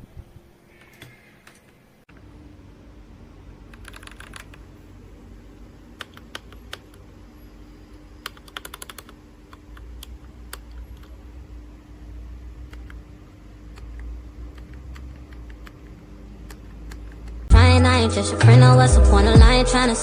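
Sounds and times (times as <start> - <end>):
steady low hum: 0.0 - 20.0
mechanical keyboard key clicks: 3.7 - 4.6.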